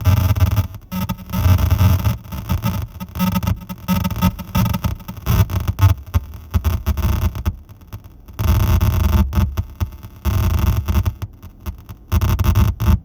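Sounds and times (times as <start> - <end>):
glitchy electronic noise: 0.0 - 7.5.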